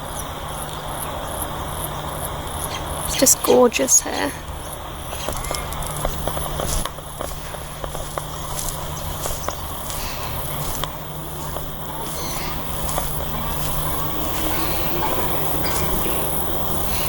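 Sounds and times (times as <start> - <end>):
distant traffic hum: 0.0 - 17.0
insects droning: 0.0 - 17.0
footsteps and clicks: 5.1 - 17.0.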